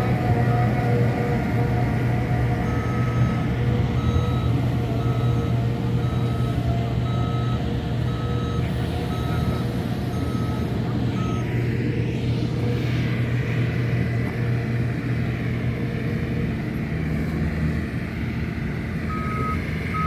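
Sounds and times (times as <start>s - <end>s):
diesel engine drone: 0.0s - 20.0s
reverse alarm beeping: 2.5s - 11.5s, 19.0s - 20.0s.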